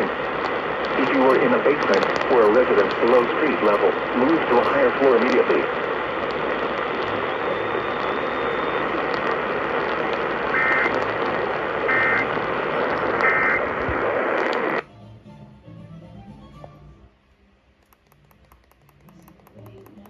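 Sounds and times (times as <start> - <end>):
broadcast noise hiss: 0.0 - 14.9
shrill two-tone digital buzzes: 11.9 - 12.3.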